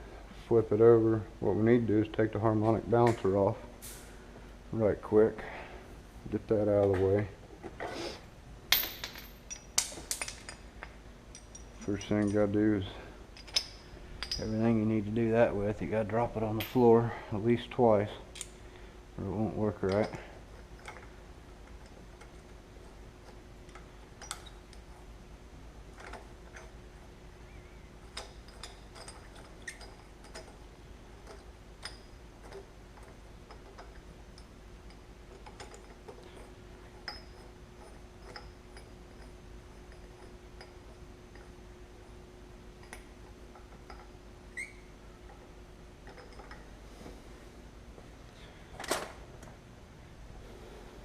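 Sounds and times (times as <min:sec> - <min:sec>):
faint steady hum: 0:00.0 - 0:51.0
hand tools clinking: 0:08.7 - 0:14.8, 0:19.7 - 0:21.1.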